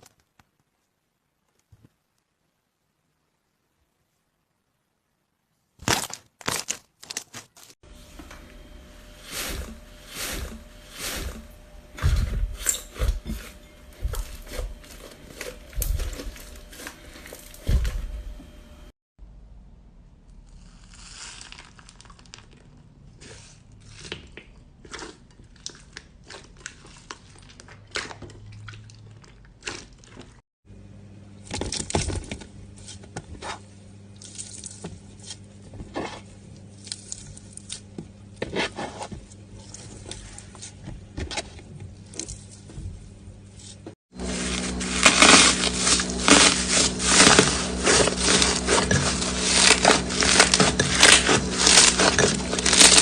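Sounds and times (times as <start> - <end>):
slime squelching: 5.8 - 18.9, 20.8 - 30.4, 43.6 - 53.0.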